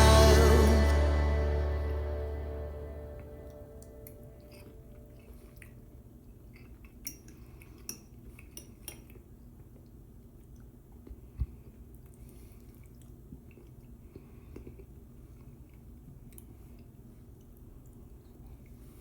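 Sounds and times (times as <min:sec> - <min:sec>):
cutlery clinking against dish: 0:07.0 - 0:09.2.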